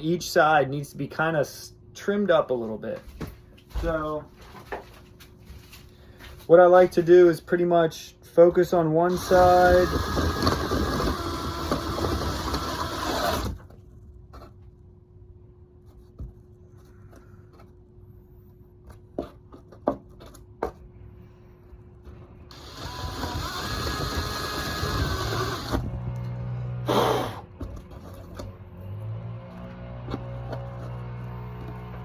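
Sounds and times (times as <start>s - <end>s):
handheld power tool whirring: 9.1s - 13.7s, 22.5s - 27.3s.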